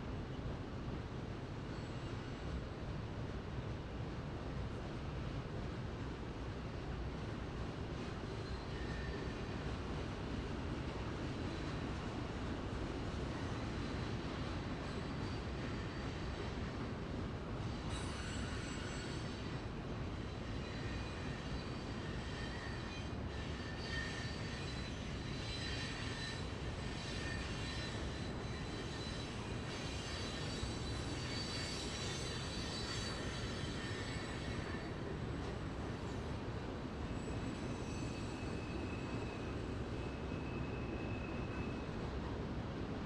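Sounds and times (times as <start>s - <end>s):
train wheels on rails: 0.0s - 43.0s
high-pitched wheel squeal: 17.7s - 19.6s, 20.3s - 35.0s, 37.1s - 42.0s.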